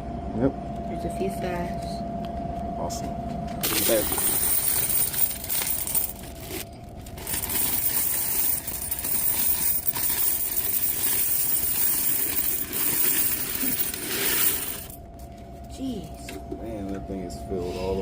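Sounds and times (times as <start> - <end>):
coins clattering and jingling: 3.6 - 15.0.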